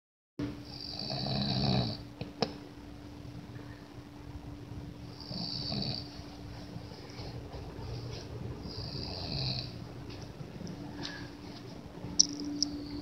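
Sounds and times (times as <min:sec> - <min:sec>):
faint steady hum: 0:00.4 - 0:13.0
man snoring loudly: 0:00.7 - 0:02.1, 0:05.2 - 0:06.1, 0:08.7 - 0:09.8.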